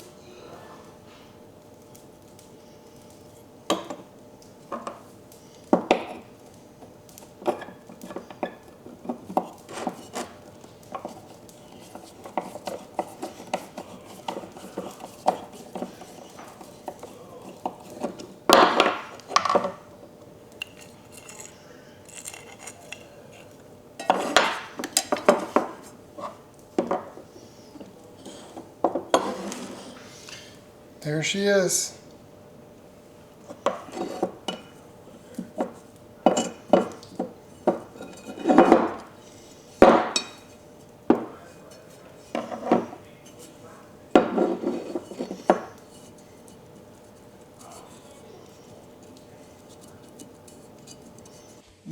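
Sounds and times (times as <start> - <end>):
metal parts clinking: 20.6 - 25.3.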